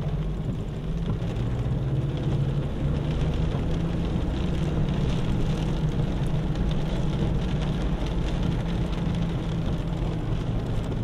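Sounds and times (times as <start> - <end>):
rain patter: 0.0 - 11.0.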